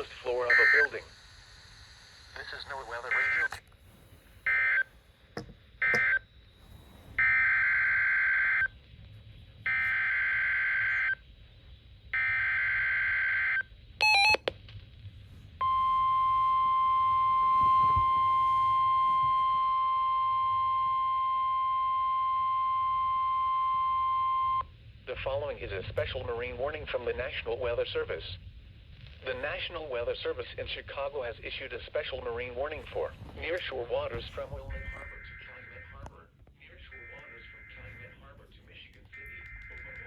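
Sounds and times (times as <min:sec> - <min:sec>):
steady warning alarm tone: 0:00.0 - 0:01.1, 0:02.7 - 0:03.6, 0:04.4 - 0:05.0, 0:05.8 - 0:11.4, 0:12.0 - 0:14.4, 0:15.6 - 0:24.7, 0:34.2 - 0:40.0.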